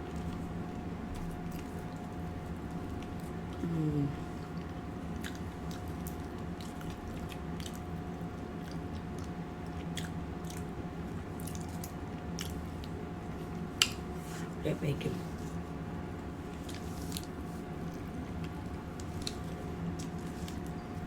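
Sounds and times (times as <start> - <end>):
steady faint hum: 0.0 - 21.0
person chewing food: 4.3 - 14.1, 16.4 - 20.8.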